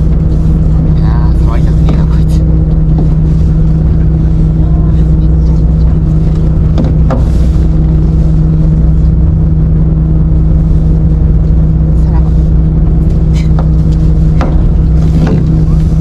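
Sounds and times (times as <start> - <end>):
boat engine droning: 0.0 - 16.0.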